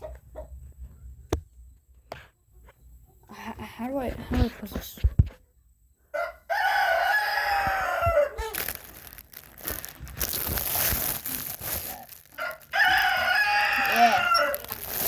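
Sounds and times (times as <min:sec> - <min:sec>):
rooster crowing: 0:06.1 - 0:08.6, 0:12.3 - 0:15.0
loud rustling: 0:08.5 - 0:15.0.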